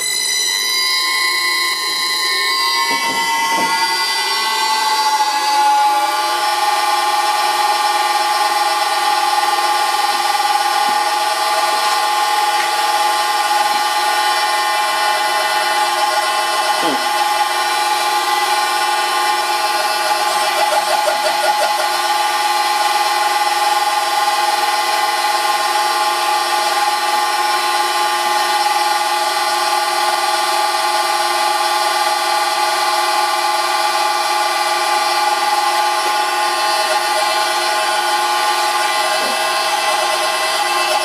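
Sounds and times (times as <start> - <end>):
short falling squeal: 0.0 - 8.1
lathe motor whine: 0.0 - 41.0.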